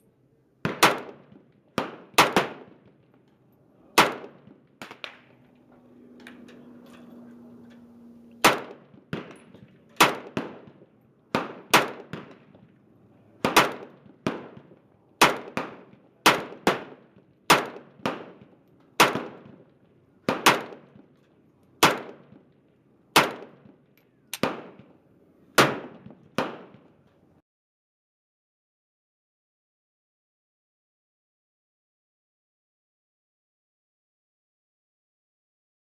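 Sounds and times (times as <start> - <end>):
rifle single shots: 0.6 - 2.8, 4.0 - 5.4, 8.4 - 12.6, 13.4 - 19.6, 20.2 - 21.0, 21.8 - 22.4, 23.2 - 23.7, 24.3 - 24.9, 25.6 - 26.9.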